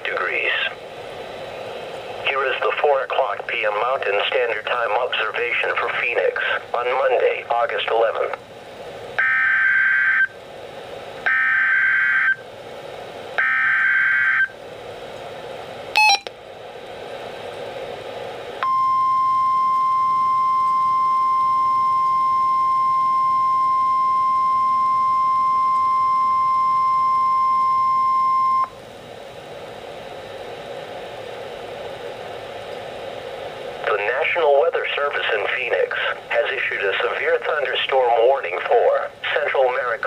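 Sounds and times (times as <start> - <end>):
radio hiss: 0.0 - 0.8, 2.2 - 8.4, 33.6 - 40.0
steady warning alarm tone: 9.2 - 10.4, 11.3 - 12.4, 13.4 - 14.5, 16.0 - 16.3.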